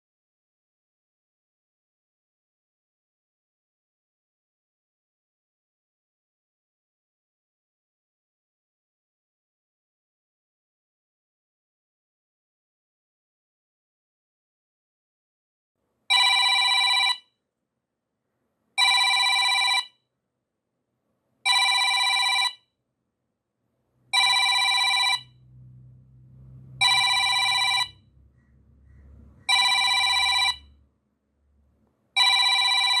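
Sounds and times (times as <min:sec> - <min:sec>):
timer alarm ringing: 0:21.5 - 0:22.6, 0:24.2 - 0:25.4, 0:26.8 - 0:28.0, 0:29.5 - 0:30.7, 0:32.2 - 0:33.0.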